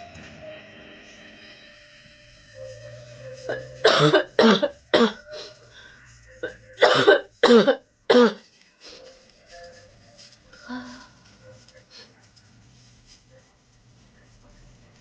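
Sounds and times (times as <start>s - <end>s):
woman coughing: 3.5s - 5.5s, 6.4s - 8.4s.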